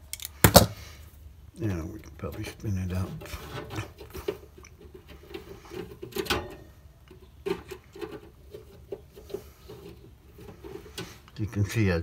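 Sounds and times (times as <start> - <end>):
pliers metal clicks and rubbing: 0.0 - 0.4.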